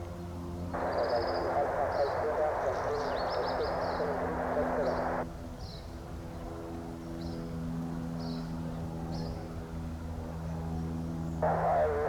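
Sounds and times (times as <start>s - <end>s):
small plane engine and propeller: 0.0s - 12.0s.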